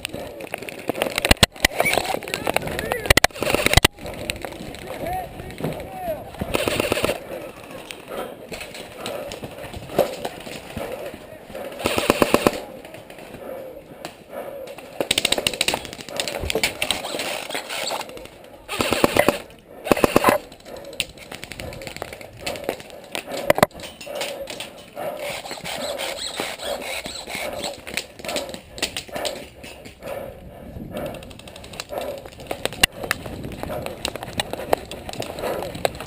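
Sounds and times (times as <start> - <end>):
indistinct voices: 0.0 - 36.0
airsoft guns full-auto bursts: 3.1 - 4.2, 6.5 - 7.2, 11.7 - 12.6, 18.7 - 22.1.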